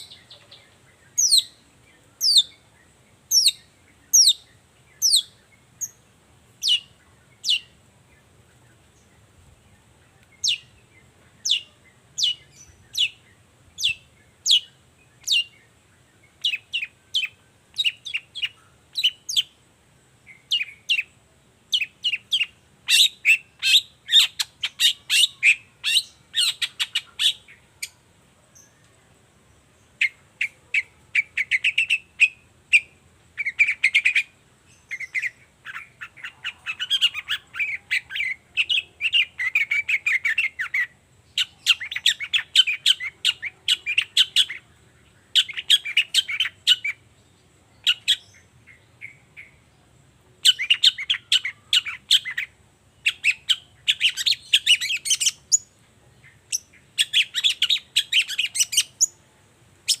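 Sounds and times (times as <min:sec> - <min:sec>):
bird singing rapid chattering notes: 0:00.0 - 0:06.0, 0:06.6 - 0:19.6, 0:29.9 - 0:47.2, 0:47.8 - 0:49.6, 0:50.4 - 0:59.2.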